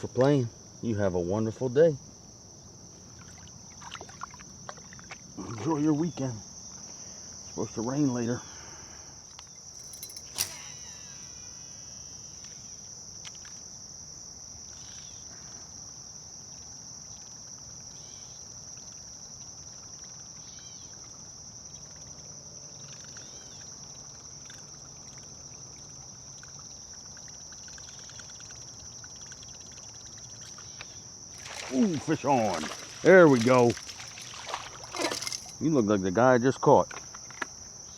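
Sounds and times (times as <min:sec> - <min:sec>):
insects chorus: 0:00.0 - 0:37.9
sharp click: 0:09.8 - 0:10.8
faint chirps: 0:26.2 - 0:34.1.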